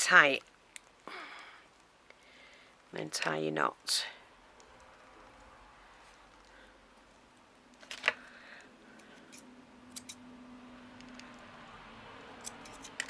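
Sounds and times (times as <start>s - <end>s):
scissors clicking: 9.3s - 10.2s, 12.4s - 13.0s.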